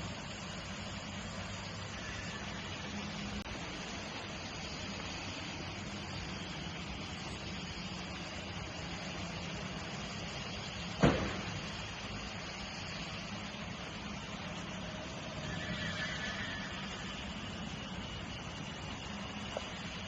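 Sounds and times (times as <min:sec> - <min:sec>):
factory machinery hum: 0:00.0 - 0:20.0
sharp knock: 0:11.0 - 0:11.6.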